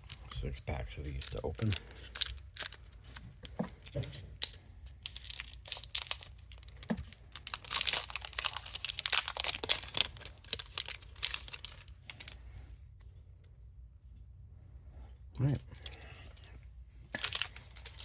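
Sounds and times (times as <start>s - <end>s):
foil pack tearing and crinkling: 1.1s - 3.5s, 4.4s - 12.4s, 17.2s - 18.0s.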